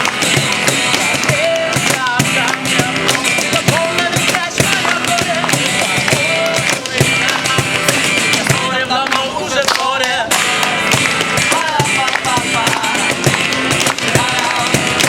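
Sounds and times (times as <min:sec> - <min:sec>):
live rock band playing: 0:00.0 - 0:08.7
drums steady beat: 0:00.0 - 0:08.9, 0:10.2 - 0:15.0.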